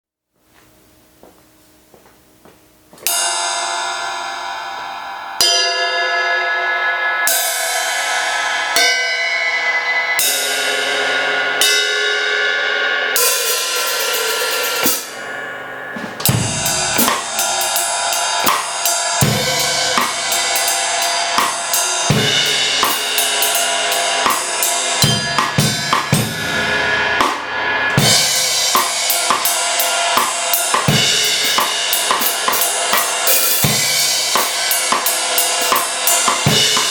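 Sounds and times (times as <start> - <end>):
cymbals struck and ringing: 3.0 - 36.9
drum kit groove: 13.2 - 36.9.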